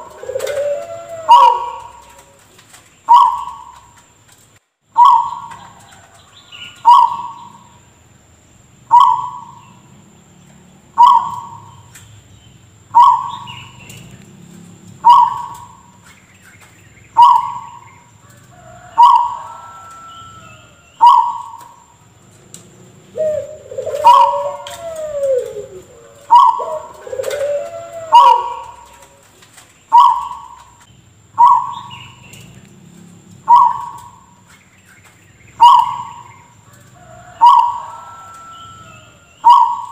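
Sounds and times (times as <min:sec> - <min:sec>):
gliding bird calls: 0:00.0 - 0:04.2, 0:04.9 - 0:07.8, 0:08.8 - 0:09.9, 0:10.9 - 0:22.0, 0:22.8 - 0:39.9.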